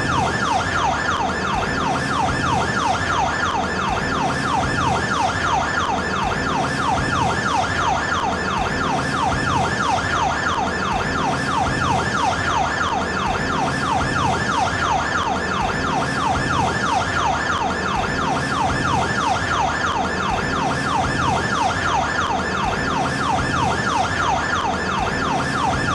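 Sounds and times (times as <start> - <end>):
siren fast yelp: 0.0 - 25.9.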